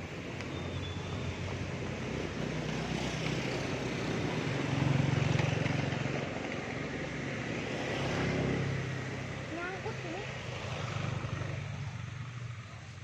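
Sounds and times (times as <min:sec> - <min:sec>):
vehicle engine passing by: 0:07.4 - 0:13.0.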